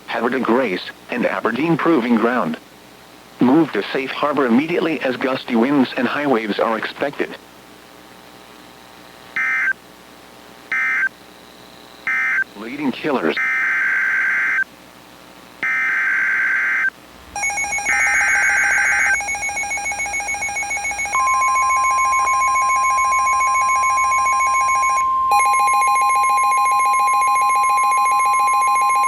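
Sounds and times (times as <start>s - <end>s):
steady alarm tone: 12.1s - 12.5s, 13.2s - 14.7s, 15.6s - 29.0s
warbling digital data bursts: 15.6s - 25.0s
pulsing ringing electronic tone: 15.6s - 29.0s.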